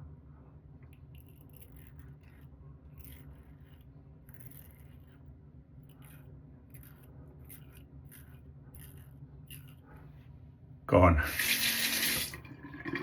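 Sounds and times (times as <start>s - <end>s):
razor scraping stubble: 5.9s - 9.9s, 11.3s - 12.4s.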